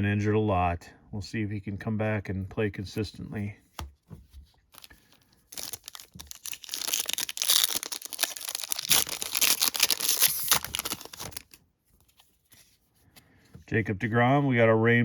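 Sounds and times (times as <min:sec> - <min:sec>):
foil wrapper tearing and crinkling: 0:04.7 - 0:11.6.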